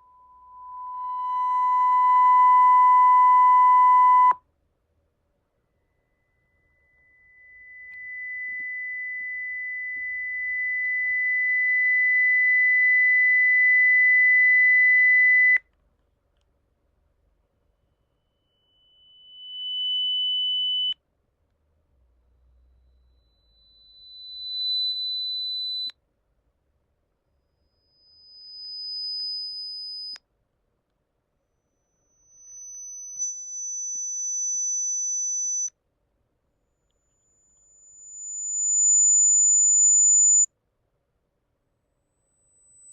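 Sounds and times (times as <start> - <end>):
high-pitched pure tone: 0.0 - 4.4, 5.8 - 15.6, 18.2 - 21.0, 22.7 - 25.9, 32.0 - 35.7, 37.2 - 40.5.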